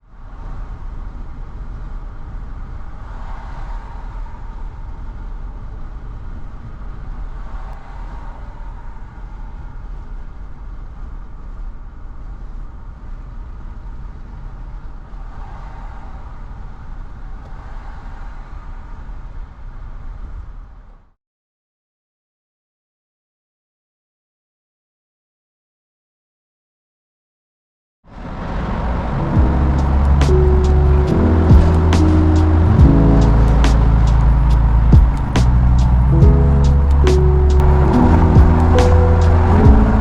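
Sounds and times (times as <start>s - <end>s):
road vehicle driving rumble: 28.2s - 40.0s.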